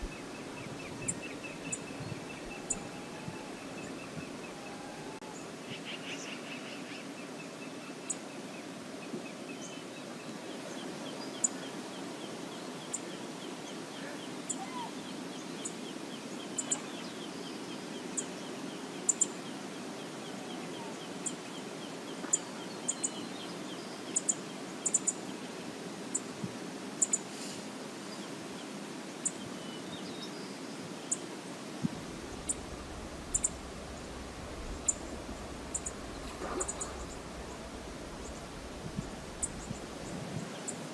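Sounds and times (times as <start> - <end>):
river water rushing: 30.8 - 40.9
bird chirps: 32.2 - 40.8.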